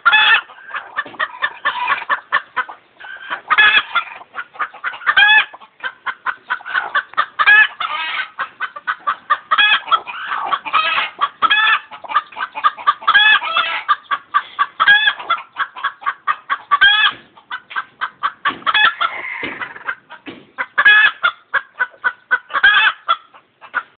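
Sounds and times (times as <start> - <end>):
chicken clucking: 0.0 - 24.0
chicken screech: 6.7 - 8.3, 18.7 - 19.9.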